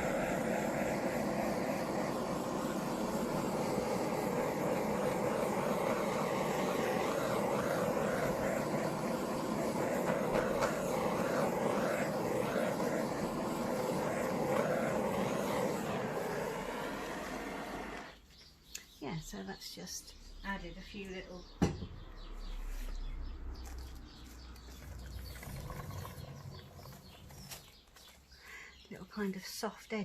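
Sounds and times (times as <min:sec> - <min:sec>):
butane torch flame hissing: 0:00.0 - 0:18.2, 0:24.7 - 0:27.7.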